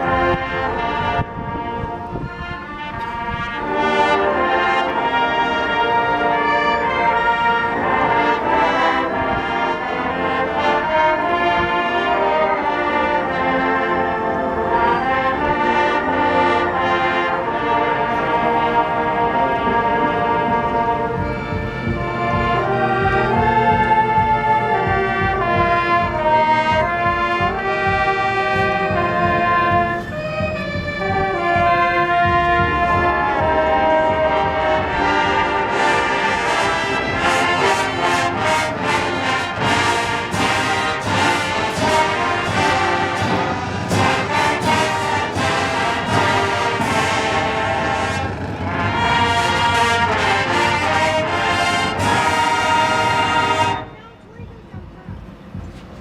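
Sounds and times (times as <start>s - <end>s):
marching band brass chords: 0.0s - 56.0s
drums and cymbals: 21.2s - 56.0s.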